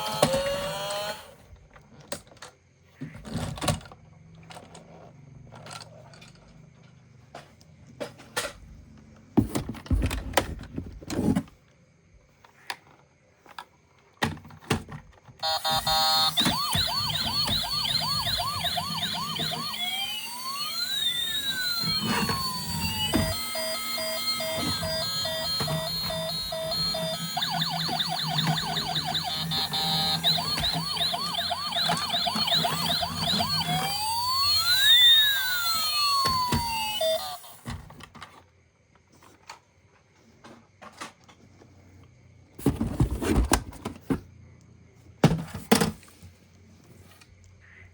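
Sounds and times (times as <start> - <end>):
toy electronic sirens: 0.0 - 1.4, 15.4 - 37.9.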